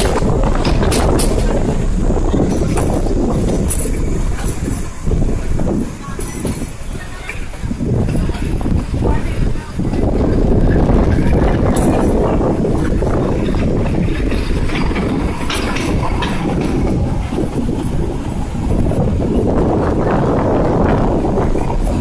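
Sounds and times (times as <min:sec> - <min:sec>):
train wheels rumbling: 0:00.0 - 0:22.0
clicks and rattles: 0:09.8 - 0:18.4.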